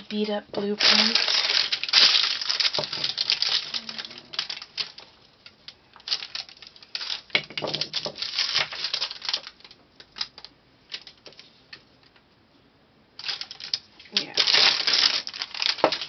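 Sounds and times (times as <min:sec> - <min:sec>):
paper rustling: 0:00.0 - 0:05.1, 0:06.0 - 0:11.6, 0:13.2 - 0:16.0
small objects clicking and tapping: 0:00.0 - 0:12.2, 0:13.2 - 0:16.0.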